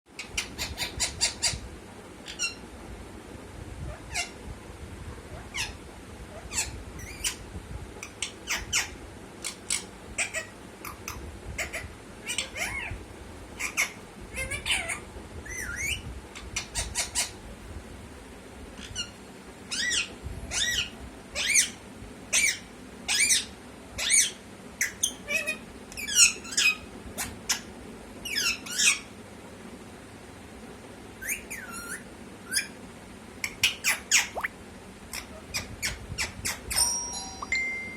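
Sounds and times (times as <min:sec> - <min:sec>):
parrot squawking and chirping: 0:00.2 - 0:01.6, 0:02.2 - 0:02.6, 0:03.9 - 0:04.4, 0:05.3 - 0:07.4, 0:08.0 - 0:13.0, 0:13.6 - 0:17.4, 0:18.8 - 0:29.1, 0:31.2 - 0:32.8, 0:33.4 - 0:34.5, 0:35.1 - 0:36.9.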